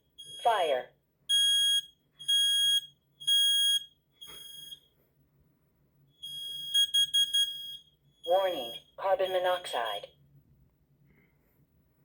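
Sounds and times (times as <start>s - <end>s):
smoke alarms beeping: 1.3s - 4.9s, 6.2s - 10.0s.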